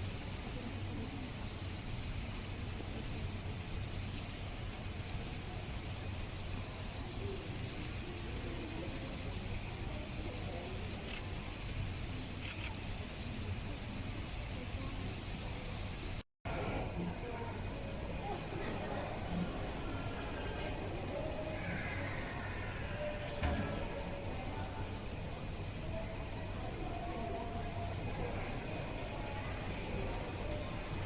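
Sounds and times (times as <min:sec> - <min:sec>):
faint indistinct murmuring: 0:00.0 - 0:31.0.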